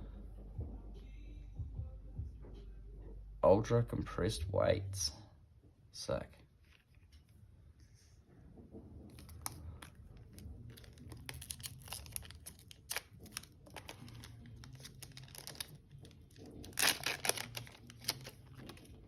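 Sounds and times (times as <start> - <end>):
foil wrapper tearing and crinkling: 9.1 - 19.0.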